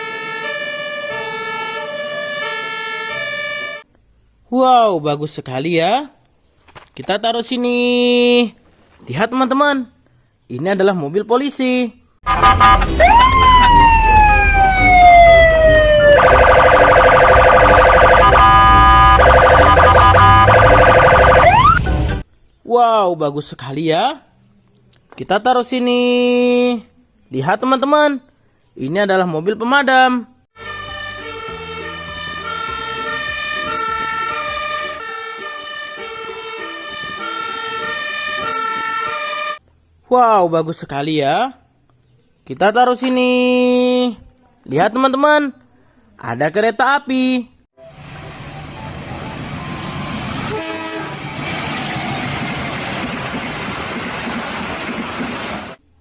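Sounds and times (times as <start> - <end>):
electronic police siren: 0.0 - 3.8, 12.3 - 21.9, 31.8 - 39.6
toy electronic siren tune: 12.3 - 21.8.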